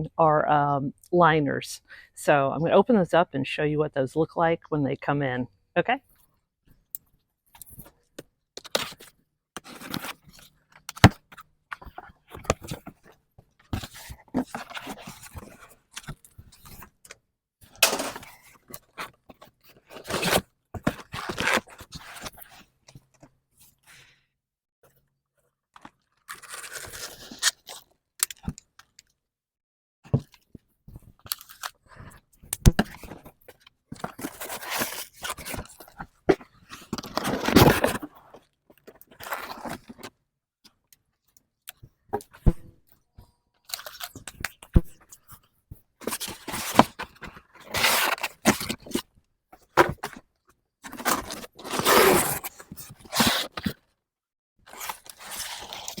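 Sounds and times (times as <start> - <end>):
cardboard crunching and tearing: 17.8 - 18.4, 26.3 - 27.7, 46.0 - 49.0, 50.9 - 53.7, 54.7 - 56.0.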